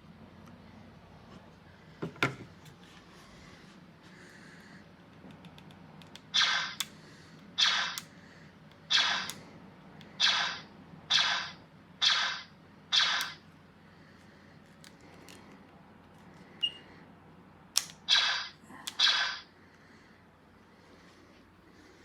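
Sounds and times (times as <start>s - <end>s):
electronic blaster shots: 6.4s - 6.8s, 7.6s - 8.0s, 8.9s - 9.3s, 10.2s - 13.4s, 18.1s - 19.4s
trigger clicks: 8.9s - 9.4s.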